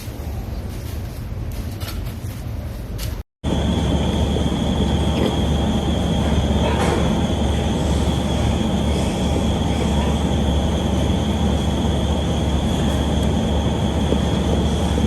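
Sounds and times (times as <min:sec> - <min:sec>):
mechanical drone: 0:03.4 - 0:15.0.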